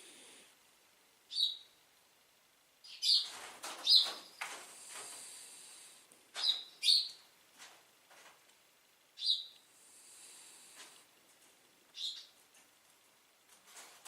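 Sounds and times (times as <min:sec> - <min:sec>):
animal raspy hissing calls: 0:04.7 - 0:06.0, 0:09.7 - 0:11.0.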